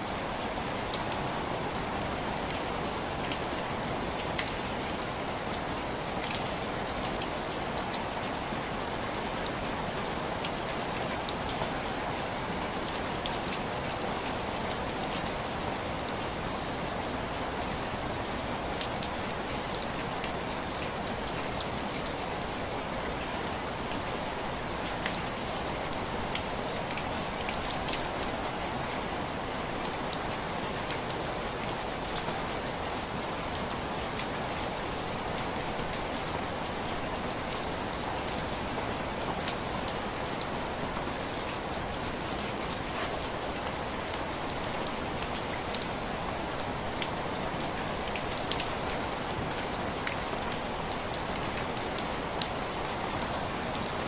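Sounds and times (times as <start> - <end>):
rain pattering on window glass: 12.8 - 54.0.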